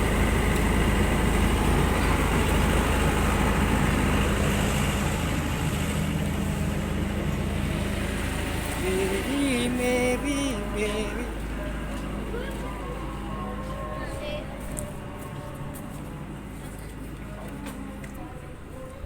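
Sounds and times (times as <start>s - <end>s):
low engine rumble: 0.0s - 19.0s
background voices: 8.7s - 16.2s.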